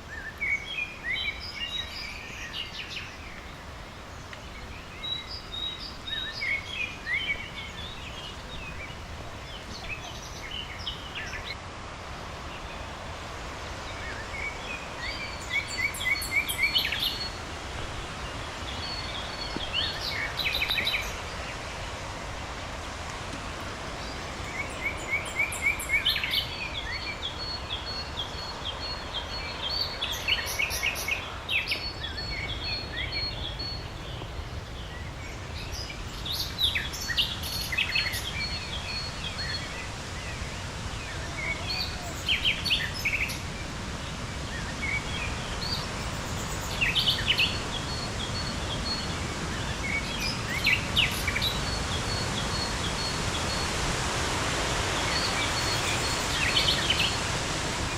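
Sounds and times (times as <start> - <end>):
songbirds singing: 0.0 - 57.9
steady rush of noise: 0.0 - 57.9.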